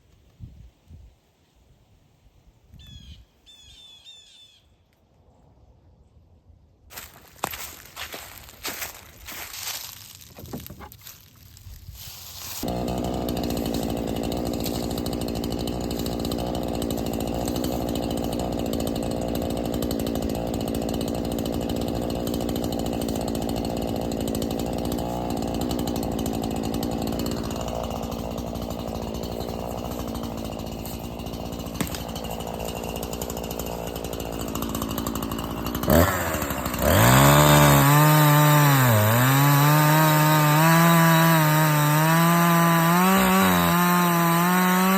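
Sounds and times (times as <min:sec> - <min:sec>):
chainsaw idling and revving: 0:07.0 - 0:09.9, 0:12.4 - 0:44.9.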